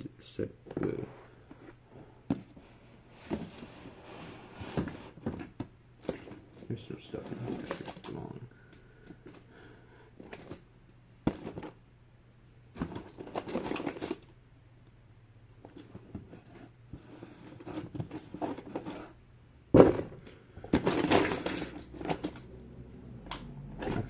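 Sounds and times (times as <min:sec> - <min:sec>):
plastic toys clattering: 0:05.2 - 0:08.4, 0:12.8 - 0:14.3, 0:19.8 - 0:22.5.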